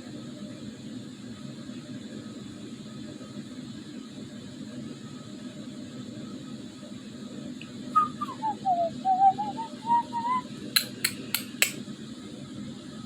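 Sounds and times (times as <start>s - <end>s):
steady low hum: 7.5s - 11.8s
whistling snore: 8.0s - 10.5s
sharp clicks: 10.8s - 11.8s.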